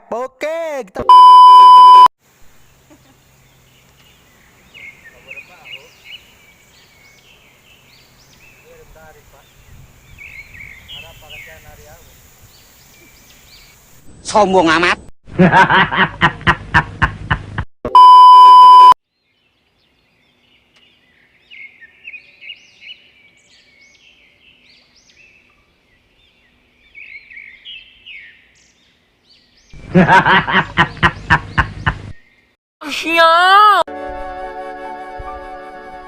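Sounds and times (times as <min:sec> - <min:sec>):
loud steady beep: 0:01.1 - 0:02.1, 0:17.9 - 0:19.0
faint bird chirping: 0:02.6 - 0:13.9.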